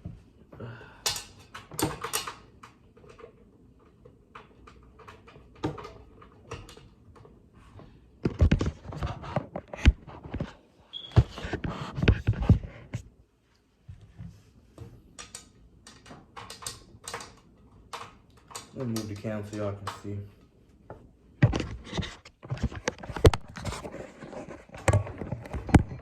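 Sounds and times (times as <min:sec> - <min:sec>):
clicks and knocks on pc case: 0:08.2 - 0:13.1, 0:24.5 - 0:26.0.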